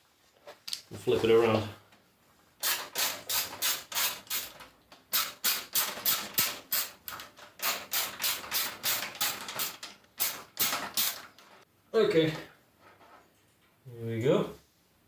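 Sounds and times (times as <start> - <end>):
screwdriver clicking on screws: 2.6 - 11.5.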